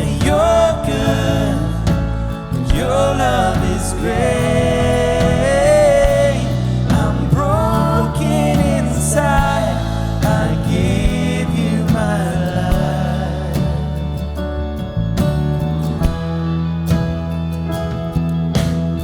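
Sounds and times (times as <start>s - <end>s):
person singing: 0.0s - 14.4s
live band worship song: 0.0s - 19.0s.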